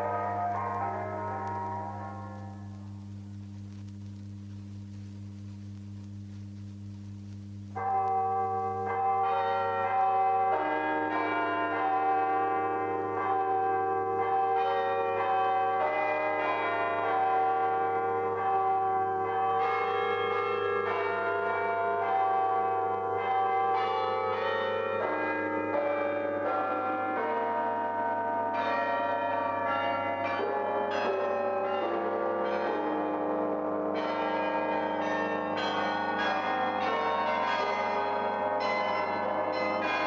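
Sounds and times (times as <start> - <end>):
church bells playing a tune: 0.0 - 2.8, 7.8 - 40.0
steady low hum: 0.0 - 8.9.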